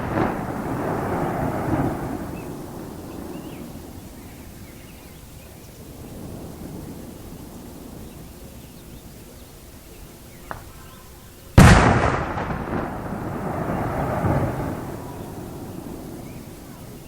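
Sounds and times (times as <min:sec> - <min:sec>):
firework blast with rumble: 0:00.0 - 0:05.1, 0:11.6 - 0:17.0
faint firework pop: 0:10.4 - 0:10.8.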